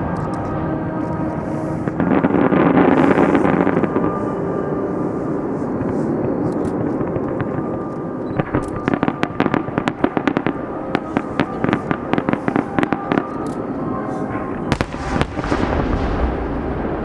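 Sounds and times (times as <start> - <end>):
rumble of firework bursts: 0.0 - 13.4, 14.4 - 17.0
firework cracks and pops: 14.8 - 16.6.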